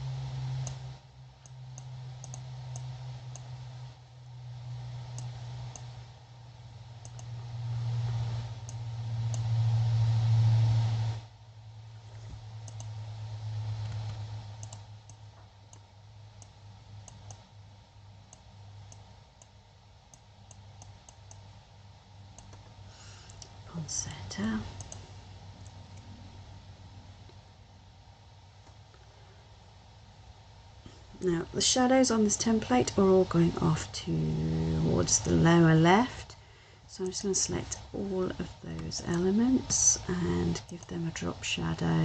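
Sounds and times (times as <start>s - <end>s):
steady low hum: 0.0s - 42.0s
computer mouse clicking: 0.6s - 0.8s, 1.4s - 3.6s, 5.1s - 5.9s, 7.0s - 7.4s, 12.6s - 13.0s, 13.8s - 17.5s, 18.3s - 21.5s, 22.3s - 25.0s, 40.6s - 41.0s.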